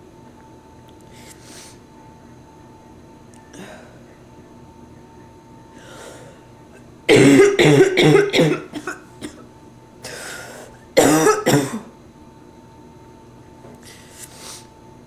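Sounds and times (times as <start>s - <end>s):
noisy breath in: 1.1s - 1.8s, 5.8s - 6.5s, 10.0s - 10.8s, 13.8s - 14.8s
woman coughing: 7.1s - 9.5s, 11.0s - 11.9s.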